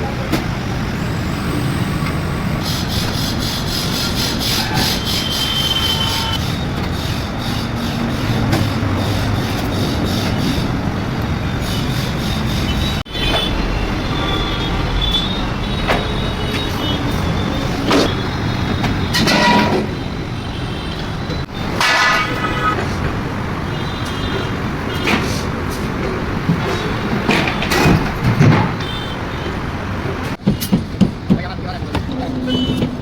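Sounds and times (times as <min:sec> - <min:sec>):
knocks and metallic clanks: 0:15.2 - 0:20.0, 0:21.4 - 0:23.2, 0:24.4 - 0:29.0.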